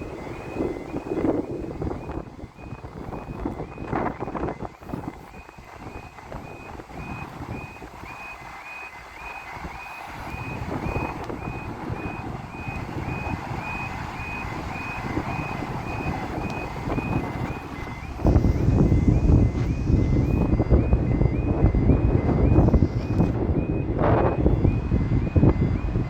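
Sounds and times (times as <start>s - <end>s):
approaching train rumble: 0.0s - 8.2s
level crossing alarm beeping: 0.0s - 26.0s.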